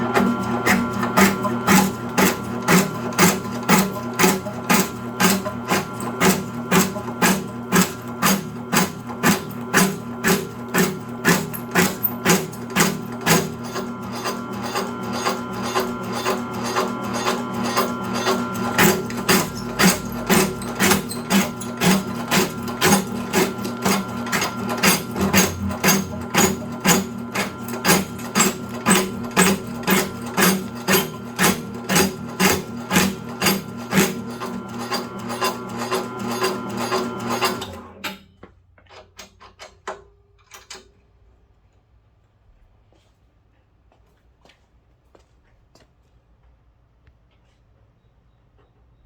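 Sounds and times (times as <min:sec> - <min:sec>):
motor hum: 0:00.0 - 0:37.4
cutting machine blade chopping: 0:00.0 - 0:38.2.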